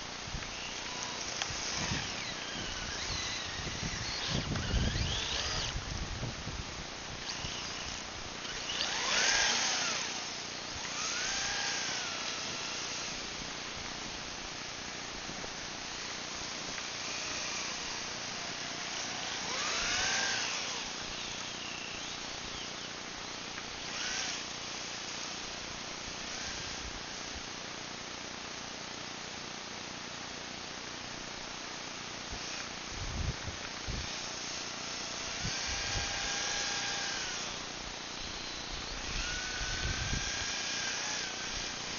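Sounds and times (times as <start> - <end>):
model jet high whine: 0.0 - 27.4, 32.2 - 41.9.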